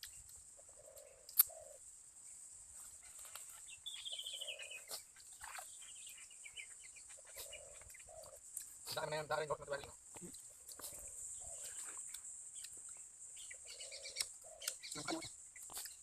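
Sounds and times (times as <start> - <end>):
small bird chirping: 0.0 - 16.0
steady high hiss: 5.9 - 16.0.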